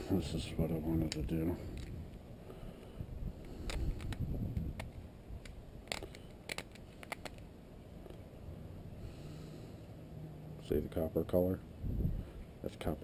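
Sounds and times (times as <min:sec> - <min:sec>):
sharp plastic clicks and snaps: 0:01.0 - 0:02.0, 0:03.4 - 0:07.5.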